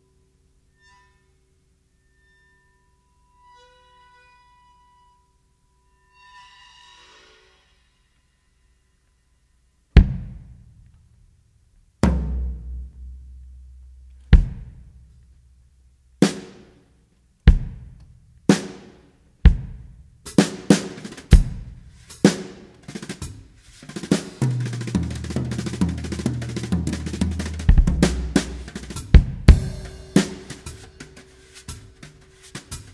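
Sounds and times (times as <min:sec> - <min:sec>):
heavy drum hits: 0:10.0 - 0:10.6, 0:12.0 - 0:15.1, 0:17.5 - 0:18.8, 0:19.5 - 0:32.9
deep bass notes: 0:12.0 - 0:15.4, 0:24.7 - 0:31.0.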